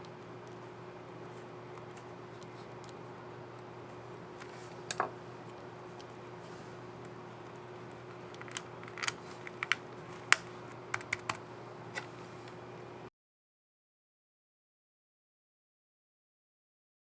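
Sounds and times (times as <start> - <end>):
faint steady hum: 0.0 - 13.1
laptop keyboard clicks: 8.4 - 11.4.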